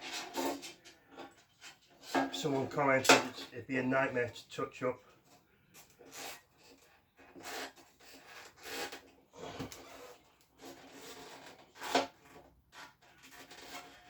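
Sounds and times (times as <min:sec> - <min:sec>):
rubbing and scraping: 0:00.0 - 0:14.0.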